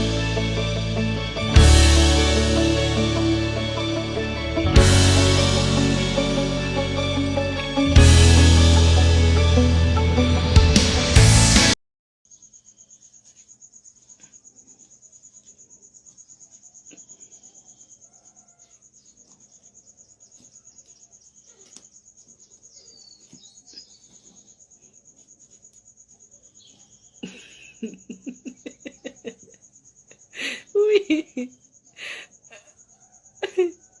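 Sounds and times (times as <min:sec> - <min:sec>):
insect trilling: 0:12.3 - 0:34.0.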